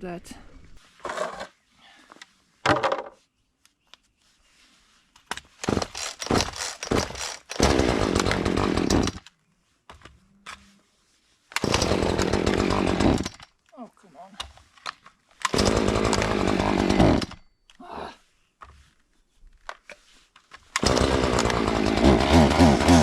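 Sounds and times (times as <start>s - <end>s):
chainsaw cutting brush: 5.6s - 9.2s, 11.6s - 13.4s, 15.4s - 17.5s, 20.8s - 23.0s.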